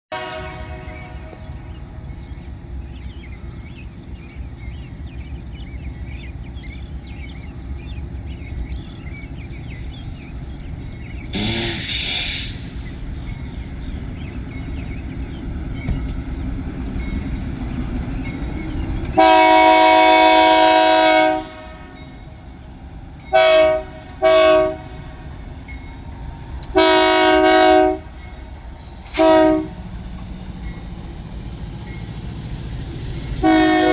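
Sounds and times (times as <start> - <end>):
train air horn blasts: 0.1 - 1.7, 11.3 - 12.8, 19.2 - 22.2, 23.3 - 25.2, 26.7 - 28.3, 29.0 - 29.9, 33.4 - 33.9
diesel locomotive rumbling: 0.1 - 33.9.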